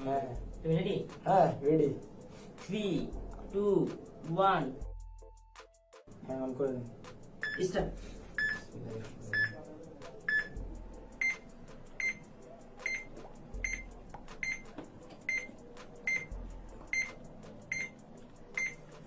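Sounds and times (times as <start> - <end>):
electronic timer beeping: 7.4 - 7.7, 8.4 - 8.7, 9.3 - 9.6, 10.3 - 10.6, 11.2 - 11.4, 12.0 - 18.8.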